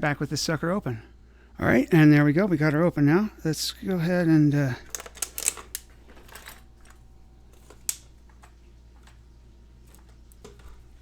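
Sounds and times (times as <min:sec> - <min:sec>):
padlock and tools clicking: 0:04.9 - 0:07.0.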